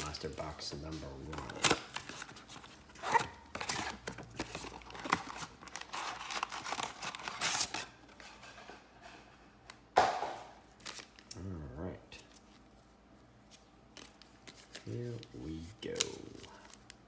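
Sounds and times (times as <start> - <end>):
plastic wrap crinkling and tearing: 0.0 - 8.0.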